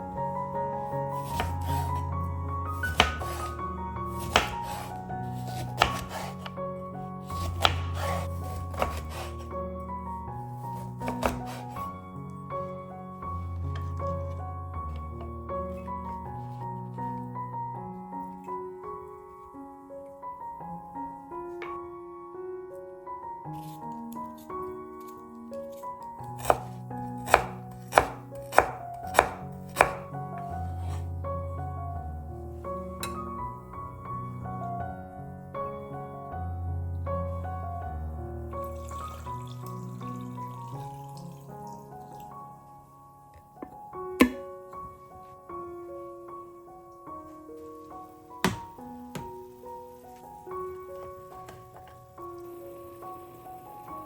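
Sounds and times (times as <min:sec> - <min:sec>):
background music: 0:00.0 - 0:54.0
knife cutting on cutting board: 0:01.2 - 0:02.0, 0:02.8 - 0:03.5, 0:04.2 - 0:06.5, 0:07.3 - 0:09.4, 0:11.1 - 0:11.7, 0:26.4 - 0:31.1.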